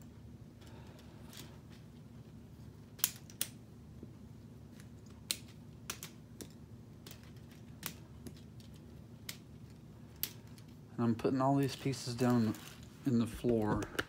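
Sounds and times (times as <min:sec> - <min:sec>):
plastic pieces clicking and snapping: 0:02.9 - 0:03.6, 0:04.8 - 0:10.8.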